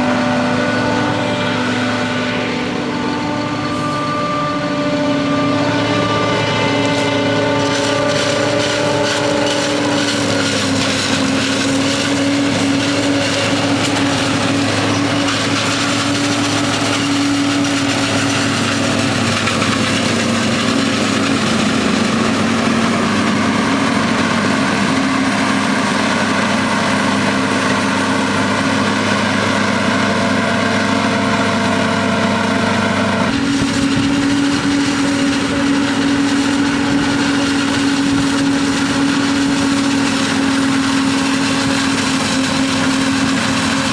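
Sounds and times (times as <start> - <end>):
diesel engine under load: 0.0 - 43.9.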